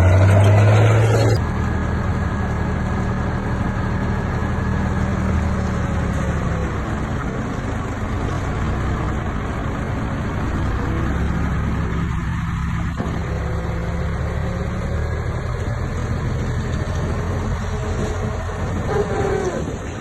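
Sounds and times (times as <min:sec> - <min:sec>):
bulldozer diesel engine droning: 0:00.0 - 0:20.0.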